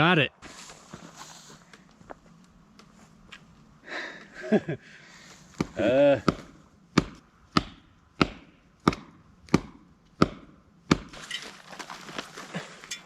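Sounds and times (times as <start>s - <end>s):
wood crackling and splintering: 11.1s - 13.0s.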